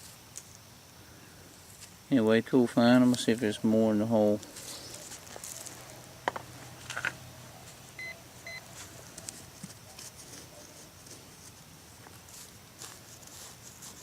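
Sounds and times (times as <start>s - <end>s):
clicks and rustling in soil: 0.0s - 0.7s, 1.5s - 7.9s, 8.6s - 14.0s
metal detector beeps: 8.0s - 8.7s.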